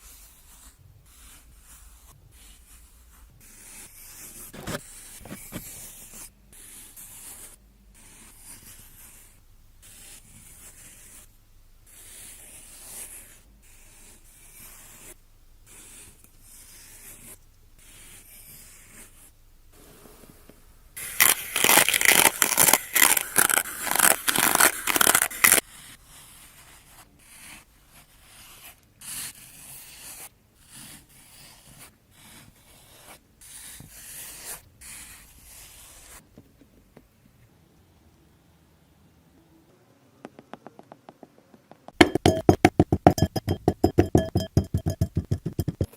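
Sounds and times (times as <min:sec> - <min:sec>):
sand being scraped: 0:04.5 - 0:05.8, 0:21.0 - 0:25.6, 0:42.0 - 0:45.9.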